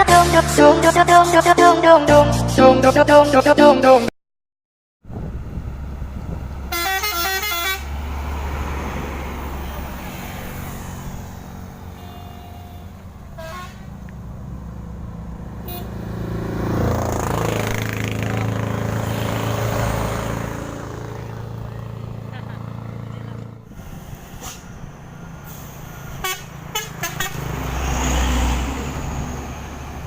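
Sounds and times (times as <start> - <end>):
heavy vehicle engines: 0.0 - 4.1, 5.0 - 30.0
truck horn playing stepped notes: 6.7 - 8.0, 11.9 - 14.1, 15.6 - 16.1, 26.1 - 27.5.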